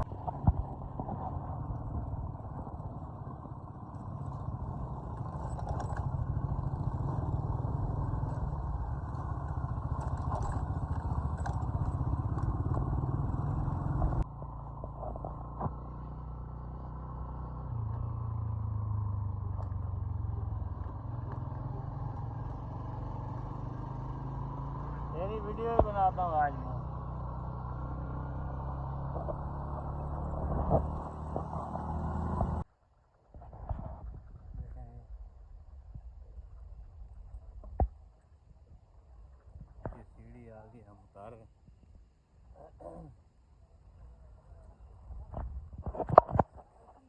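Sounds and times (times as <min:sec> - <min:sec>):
motorcycle engine running: 0:00.0 - 0:32.6
road and traffic noise: 0:00.0 - 0:32.7, 0:38.6 - 0:47.0.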